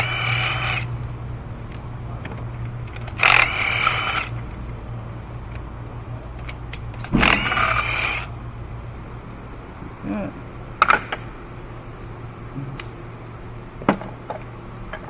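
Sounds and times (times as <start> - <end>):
power tool motor whine: 0.0 - 1.2, 2.6 - 4.8, 6.4 - 8.4
low steady hum: 0.0 - 15.0.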